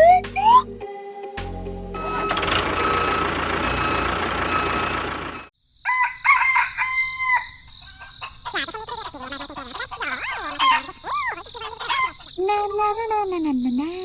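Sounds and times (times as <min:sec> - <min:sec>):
rooster crowing: 0:05.8 - 0:08.5, 0:10.2 - 0:11.0.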